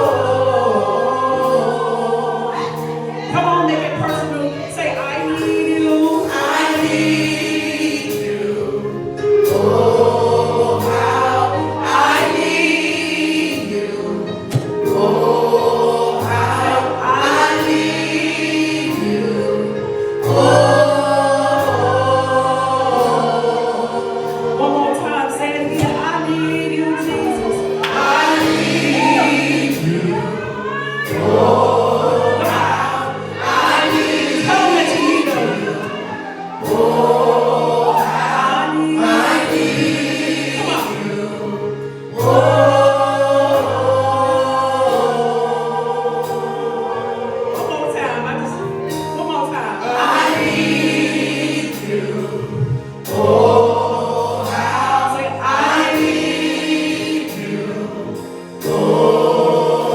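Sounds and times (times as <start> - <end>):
gospel choir singing: 0.0 - 59.9
steady drum beat: 27.0 - 41.3.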